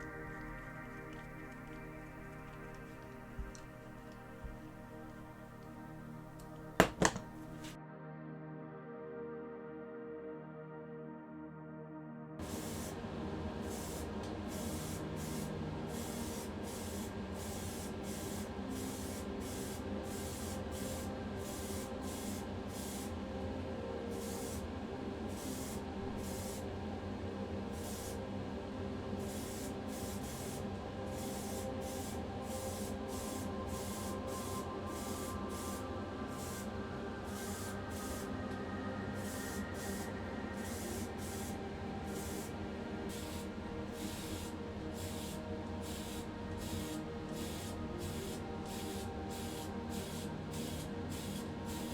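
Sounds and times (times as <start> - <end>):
steady low hum: 0.0 - 7.8
spray paint hissing bursts: 12.4 - 13.0, 13.6 - 23.1, 25.4 - 26.6, 27.8 - 28.2, 29.2 - 30.6, 31.2 - 38.4, 39.1 - 51.9.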